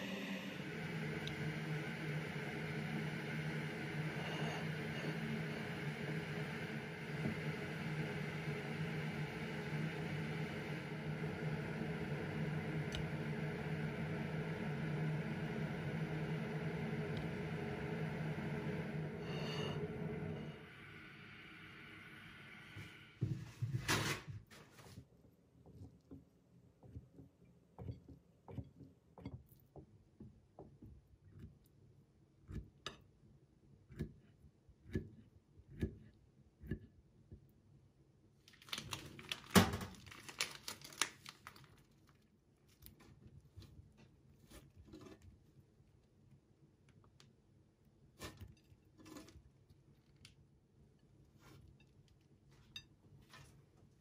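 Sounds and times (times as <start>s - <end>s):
faint clicks and knocks of objects: 38.4s - 47.4s, 48.2s - 54.0s.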